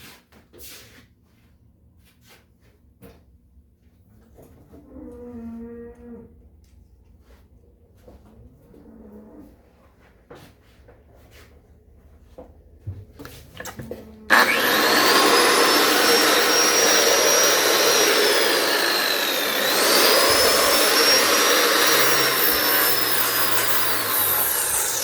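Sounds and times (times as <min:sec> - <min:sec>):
electric motor whining: 0:14.3 - 0:25.0.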